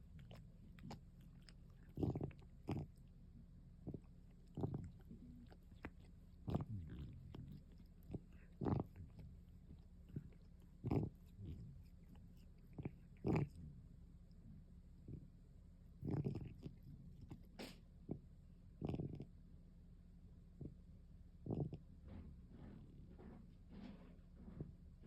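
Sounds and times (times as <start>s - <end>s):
cat licking and nibbling: 0.0s - 3.1s, 3.8s - 13.7s, 16.1s - 17.7s.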